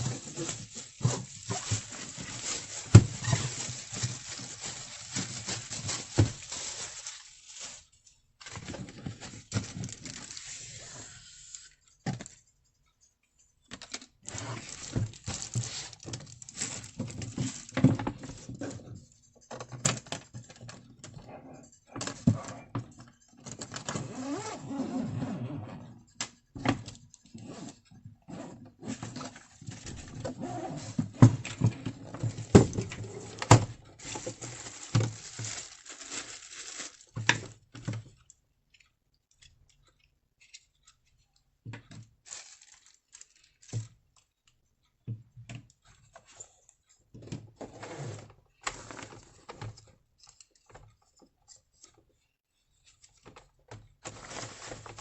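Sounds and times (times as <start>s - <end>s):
papers rustling: 0.0s - 11.1s, 13.8s - 18.6s, 30.9s - 38.2s, 53.0s - 55.0s.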